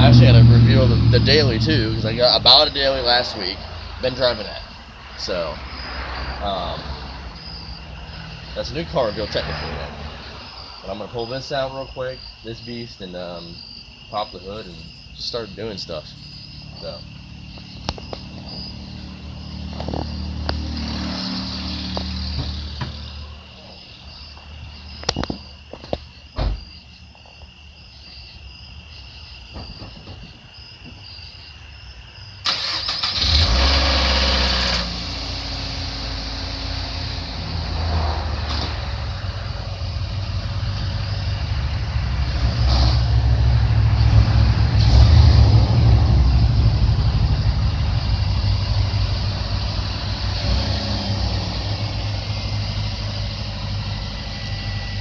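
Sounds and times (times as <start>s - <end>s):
car engine starting and running: 0.0s - 10.6s, 16.4s - 23.4s, 32.4s - 55.0s
crickets chirping: 0.0s - 55.0s.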